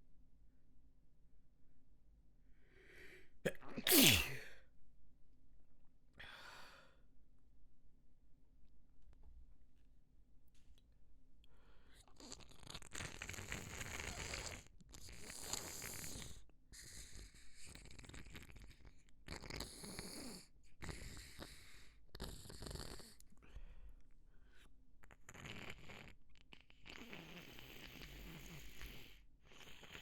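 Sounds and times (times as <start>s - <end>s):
person blowing nose: 3.9s - 4.5s.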